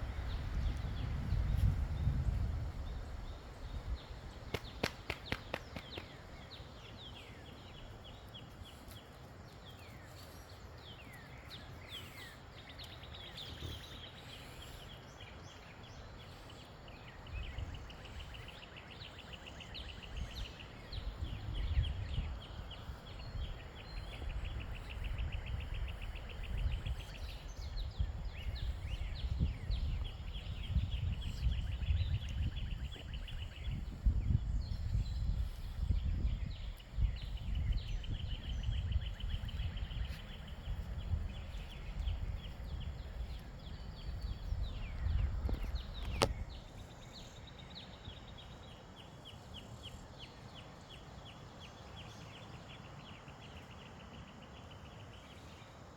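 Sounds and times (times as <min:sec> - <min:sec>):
wind rumbling on microphone: 0:00.0 - 0:48.8
birds chirping and trilling: 0:09.8 - 0:50.1.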